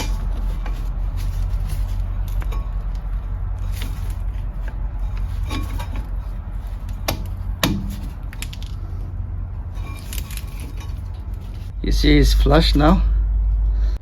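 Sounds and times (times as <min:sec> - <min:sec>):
metal tools clicking and knocking: 0:00.0 - 0:08.8
low steady hum: 0:00.0 - 0:14.0.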